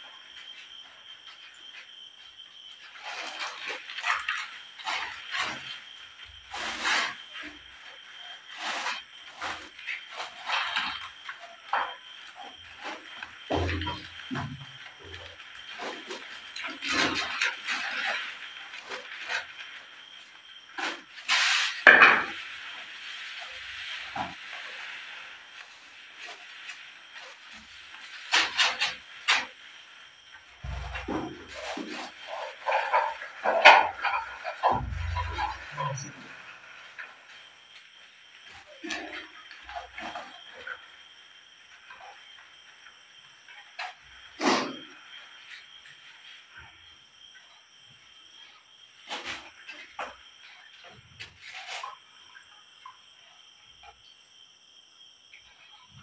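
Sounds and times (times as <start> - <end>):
cricket chirring: 0.0 - 56.0
steady hiss: 0.0 - 56.0
scraping and rustling of handling: 30.4 - 37.8.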